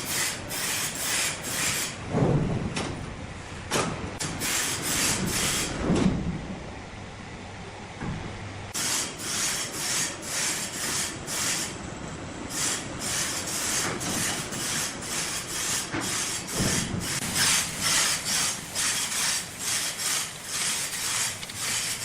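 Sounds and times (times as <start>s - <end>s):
wood being sawn: 12.7s - 22.0s.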